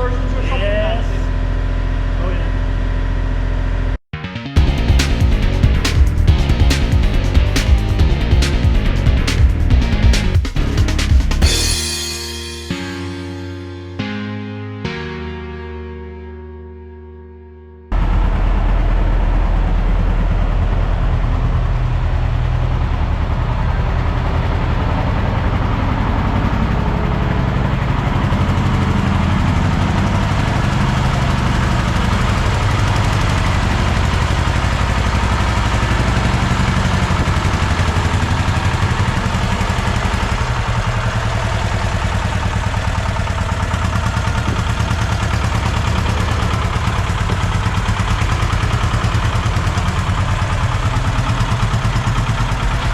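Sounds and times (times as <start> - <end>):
engine running steadily: 4.6 - 11.4, 17.9 - 52.9.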